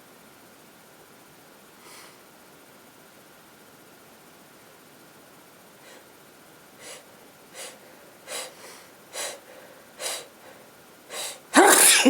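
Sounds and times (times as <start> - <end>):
woman sharp in-breaths: 6.8 - 12.0.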